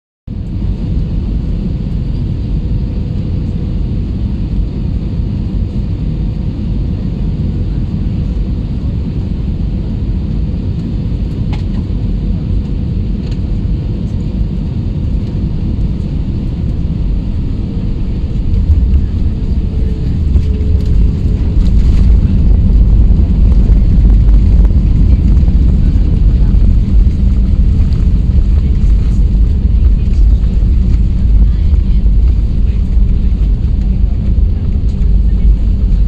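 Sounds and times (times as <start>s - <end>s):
airliner engine rumble in cabin: 0.3s - 36.0s
faint hum: 0.4s - 36.0s.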